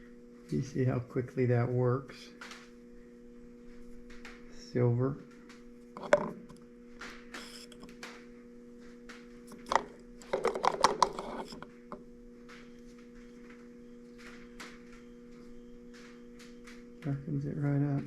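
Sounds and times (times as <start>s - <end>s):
steady low hum: 0.0s - 18.0s
clicks and knocks on a workbench: 6.0s - 8.2s, 9.1s - 12.7s.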